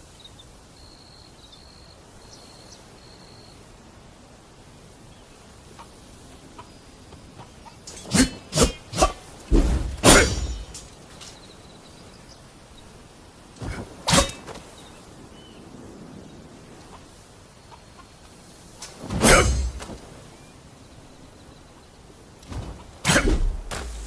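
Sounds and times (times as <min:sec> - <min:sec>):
sword strikes: 0:07.9 - 0:10.9, 0:19.1 - 0:19.8, 0:23.1 - 0:24.0.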